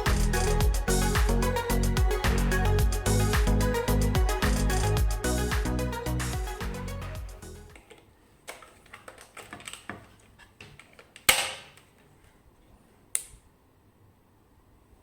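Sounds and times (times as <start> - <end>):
background music: 0.0 - 7.7.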